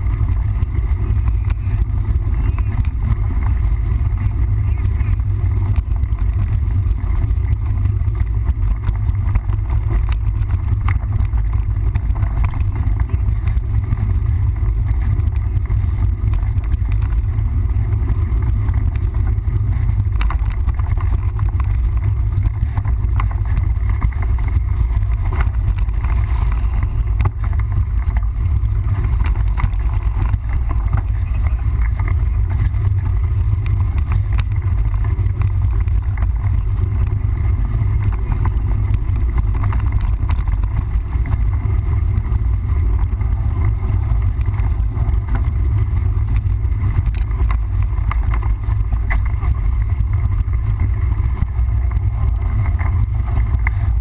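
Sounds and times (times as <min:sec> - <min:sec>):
bike clicks and rattles: 0:00.0 - 0:54.0
tyre and trail noise: 0:00.0 - 0:54.0
wind rumble on microphone: 0:00.0 - 0:54.0.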